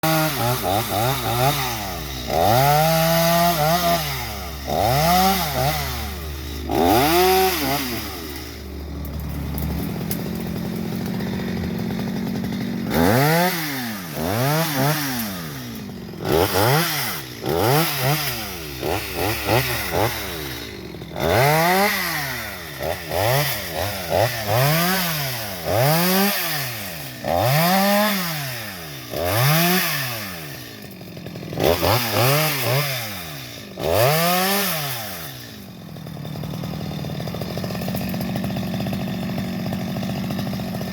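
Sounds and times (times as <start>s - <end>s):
chainsaw engine revving: 0.0s - 40.9s.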